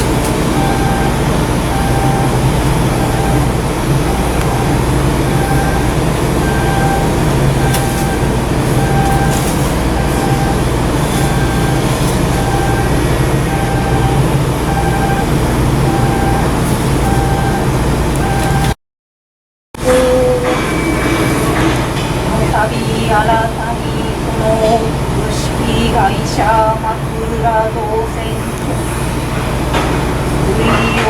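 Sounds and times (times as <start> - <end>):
low mechanical rumble: 0.0 - 18.8.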